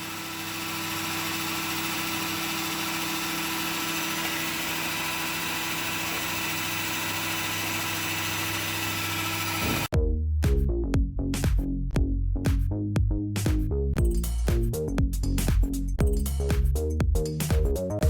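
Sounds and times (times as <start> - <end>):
router machine humming: 0.0 - 9.9.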